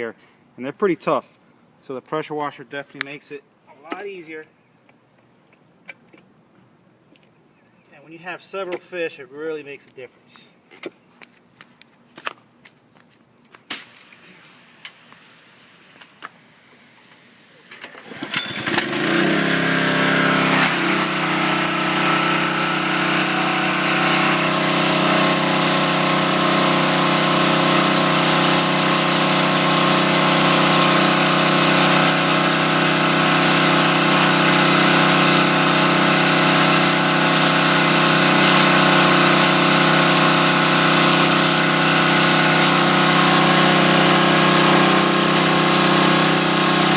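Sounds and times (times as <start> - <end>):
water jet hissing: 13.7 - 46.9
pressure washer motor: 13.8 - 46.9.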